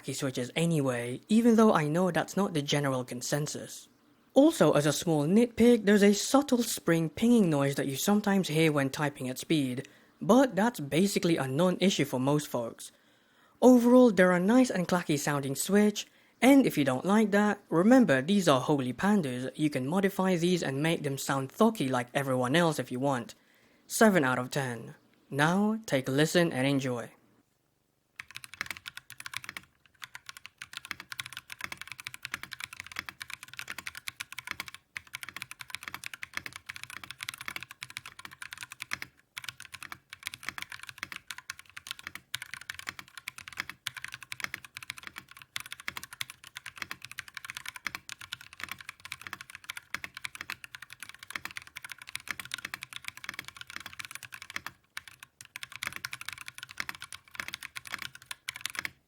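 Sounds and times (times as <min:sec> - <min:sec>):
mechanical keyboard typing: 0:28.2 - 0:59.0.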